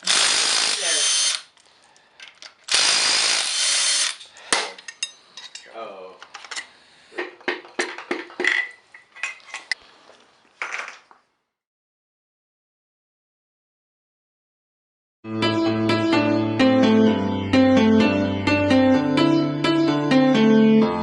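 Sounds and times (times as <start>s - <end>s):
power tool burst on bolts: 0.0s - 1.5s, 2.7s - 4.3s.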